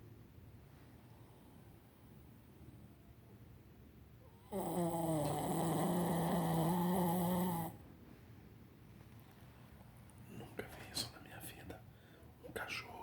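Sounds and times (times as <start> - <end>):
dog snoring: 4.3 - 7.8
faint breathing: 11.8 - 13.0.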